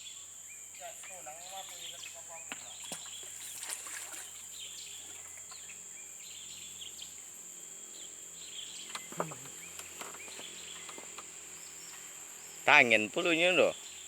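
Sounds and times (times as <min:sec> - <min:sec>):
high insect drone: 0:00.0 - 0:14.0
bird chirps: 0:07.9 - 0:14.0.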